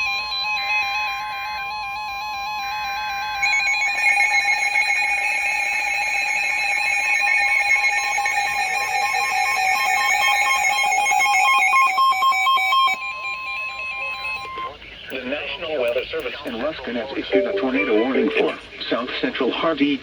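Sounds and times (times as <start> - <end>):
electronic alarm beeping: 0.0 - 15.1, 17.3 - 18.6
steady high alert tone: 3.1 - 14.8, 17.3 - 18.7.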